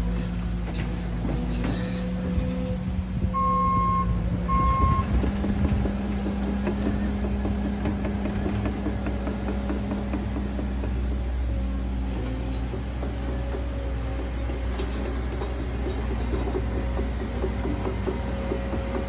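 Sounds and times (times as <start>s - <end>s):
reversing alarm beeps: 3.4s - 5.2s.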